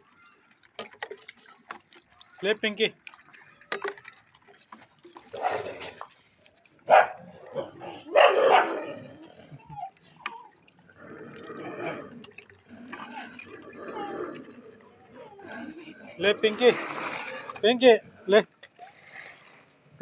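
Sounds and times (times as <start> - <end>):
dogs barking: 5.3 - 5.9, 6.9 - 9.2.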